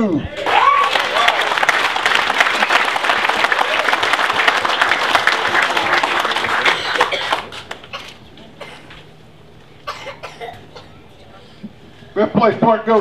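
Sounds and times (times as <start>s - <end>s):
crowd applauding: 0.3s - 8.2s.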